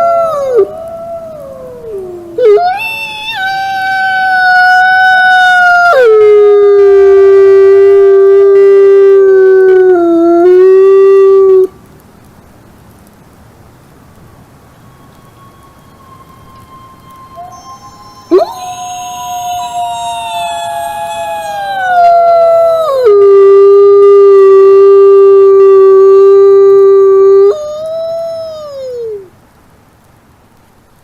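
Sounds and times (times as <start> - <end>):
wolves howling: 0.0 - 7.4, 14.8 - 29.3
faint hiss: 0.0 - 31.0.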